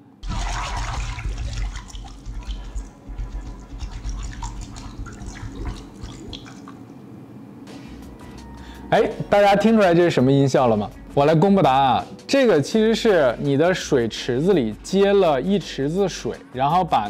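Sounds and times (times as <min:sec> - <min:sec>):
water draining from a sink: 0:00.2 - 0:06.8.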